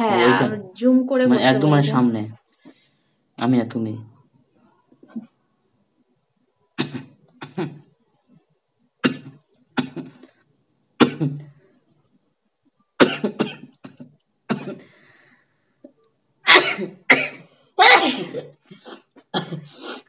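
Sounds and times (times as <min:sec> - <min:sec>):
person coughing: 0:13.0 - 0:14.9, 0:16.5 - 0:19.9.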